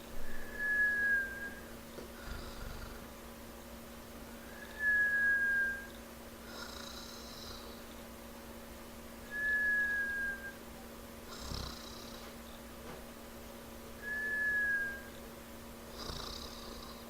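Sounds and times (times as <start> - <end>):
high falling whistle: 0.2 - 1.6
cartoon snoring: 2.2 - 3.1, 6.5 - 7.8, 11.3 - 12.3, 15.9 - 17.0.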